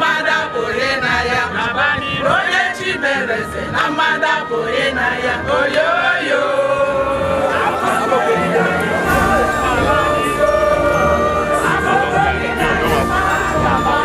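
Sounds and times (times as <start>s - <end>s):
choir singing: 0.0s - 14.0s
held instrumental tones: 4.0s - 14.0s.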